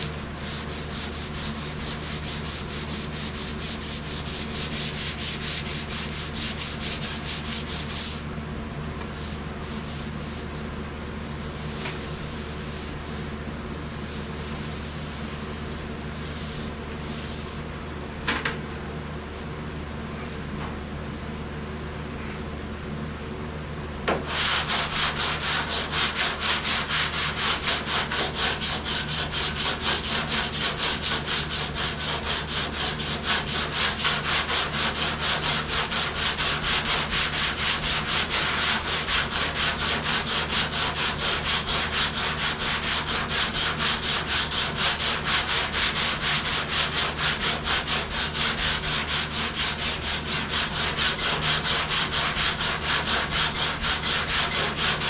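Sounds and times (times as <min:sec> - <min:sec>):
sandpaper rubbing on panel: 0:00.0 - 0:08.2, 0:09.0 - 0:10.8, 0:11.4 - 0:17.7, 0:24.2 - 0:55.0.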